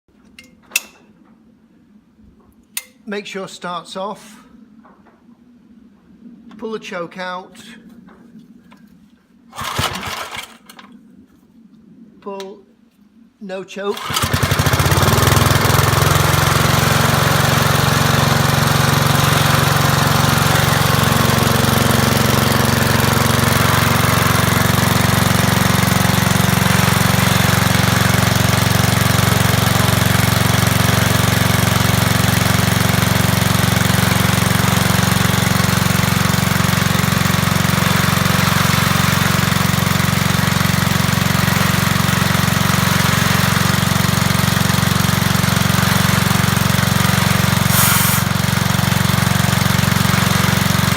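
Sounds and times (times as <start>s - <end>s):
small petrol engine running: 9.6s - 10.6s, 13.9s - 50.9s.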